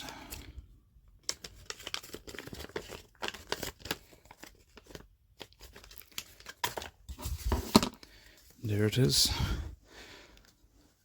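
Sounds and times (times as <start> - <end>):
packaging crinkling and rustling: 1.1 - 8.5.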